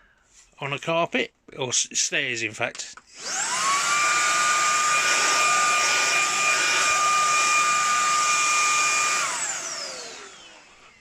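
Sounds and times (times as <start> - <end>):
handheld vacuum whining: 3.1 - 11.0.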